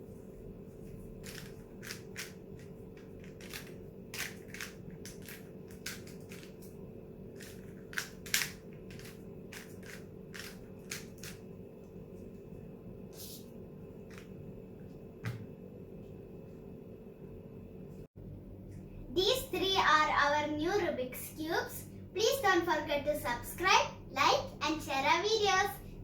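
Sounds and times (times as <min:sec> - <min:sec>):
faint steady hum: 0:00.0 - 0:26.0
plastic packaging crinkling: 0:07.3 - 0:11.4.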